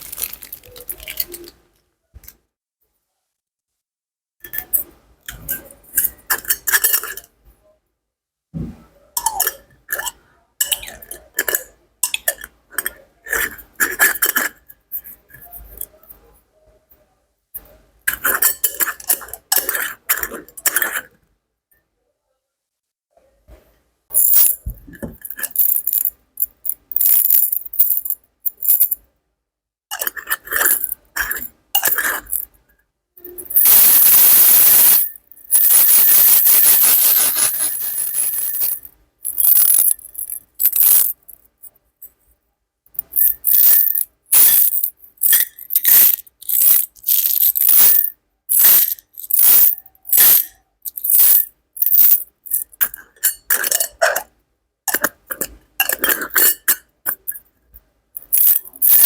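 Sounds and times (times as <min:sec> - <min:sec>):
small hard objects clinking: 0:00.0 - 0:01.6, 0:24.1 - 0:29.0, 0:29.9 - 0:32.5, 0:33.3 - 0:41.4, 0:43.0 - 0:54.0, 0:58.2 - 0:59.0.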